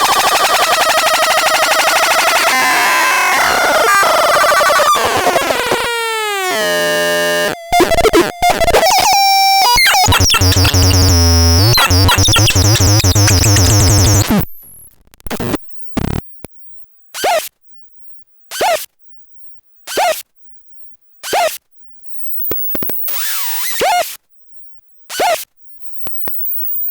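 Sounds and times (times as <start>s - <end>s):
harsh synthesizer tones: 0.0s - 14.4s.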